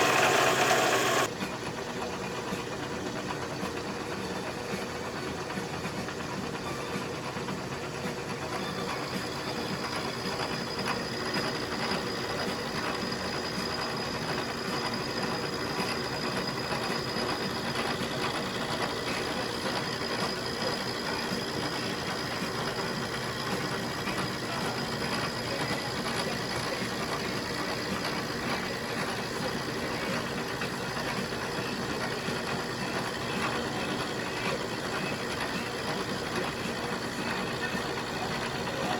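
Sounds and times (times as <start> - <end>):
milling machine running: 0.0 - 1.3, 8.2 - 38.9
thin high whine: 0.0 - 1.3.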